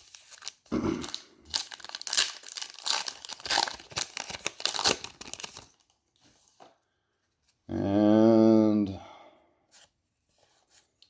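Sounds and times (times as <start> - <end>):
wrapper crinkling and tearing: 0.0 - 6.0.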